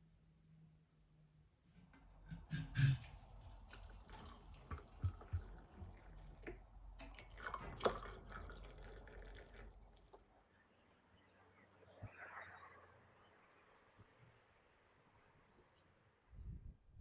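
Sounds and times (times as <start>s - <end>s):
water dripping: 3.7s - 10.3s.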